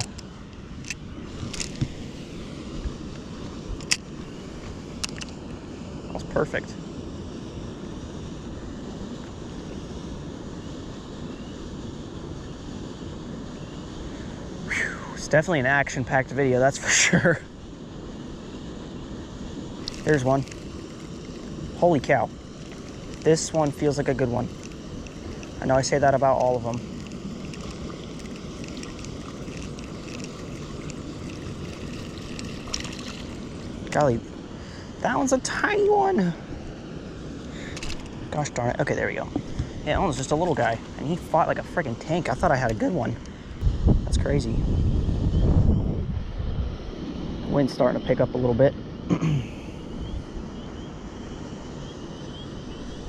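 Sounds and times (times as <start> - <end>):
wind rumbling on microphone: 0.0 - 10.4, 12.0 - 49.0
wind buffeting microphone: 19.7 - 34.8, 42.2 - 46.8.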